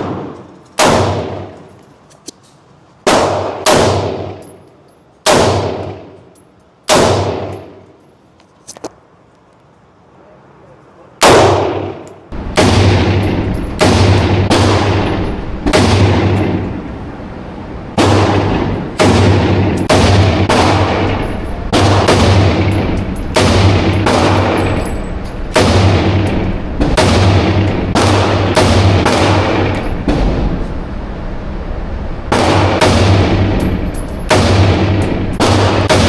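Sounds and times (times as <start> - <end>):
rifle shots echoing: 0.0 - 1.7, 3.0 - 4.6, 5.2 - 6.2, 6.9 - 7.9, 11.2 - 17.0, 17.9 - 30.7, 32.3 - 36.0.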